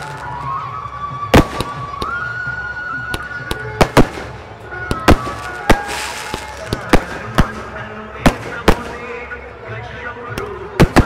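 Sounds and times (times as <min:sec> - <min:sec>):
fireworks bangs: 0:01.2 - 0:02.2, 0:03.5 - 0:09.3, 0:10.8 - 0:11.0.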